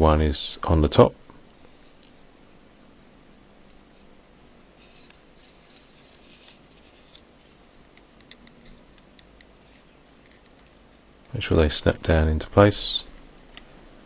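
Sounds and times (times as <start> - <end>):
small parts clicking: 10.2 - 11.4.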